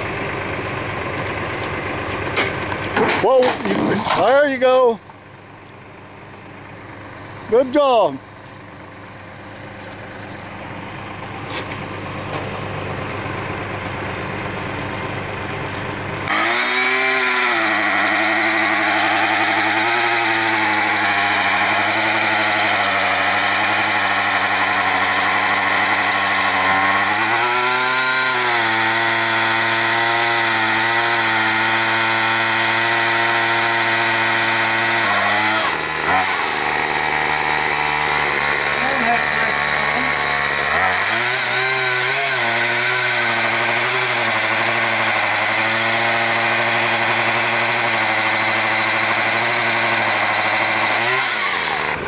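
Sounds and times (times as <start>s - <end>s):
chainsaw cutting wood: 2.8s - 4.9s, 16.2s - 52.0s.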